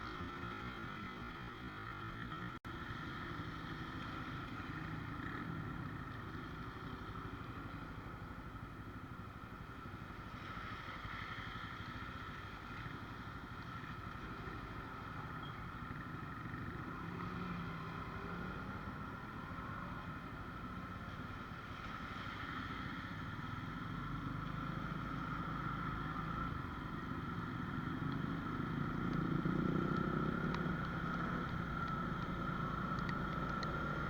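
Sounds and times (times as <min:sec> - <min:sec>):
motorcycle engine running: 0:23.5 - 0:34.0.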